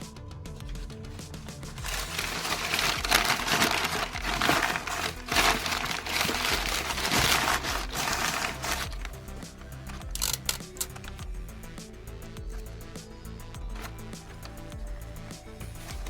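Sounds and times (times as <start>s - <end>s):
faint background music: 0.0s - 16.0s
packing material crinkling: 1.7s - 11.2s.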